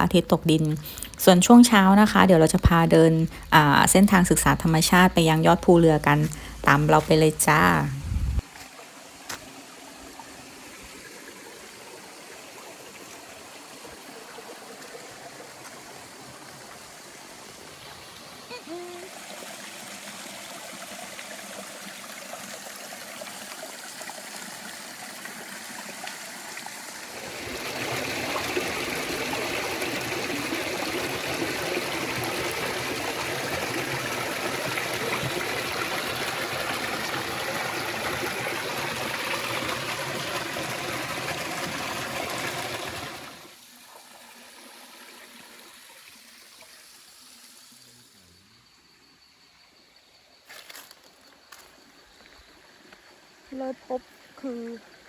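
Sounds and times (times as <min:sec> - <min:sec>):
waterfall splashing and flowing: 0:08.2 - 0:43.6.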